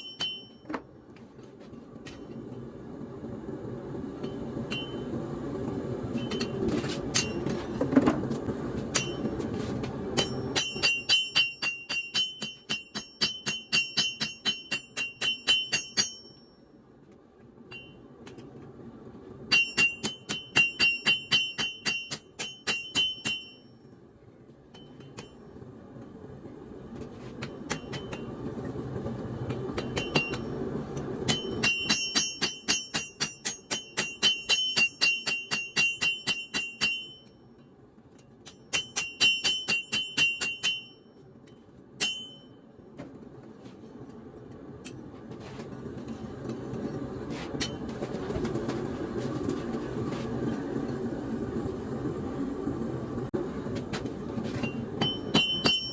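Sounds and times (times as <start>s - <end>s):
hammer ringing on anvil: 0.0s - 0.8s, 4.2s - 5.1s, 9.0s - 9.4s, 10.2s - 16.6s, 19.5s - 23.7s, 29.8s - 30.5s, 31.3s - 37.4s, 38.4s - 41.1s, 42.0s - 42.6s, 55.0s - 55.9s
low steady rush: 0.0s - 55.9s.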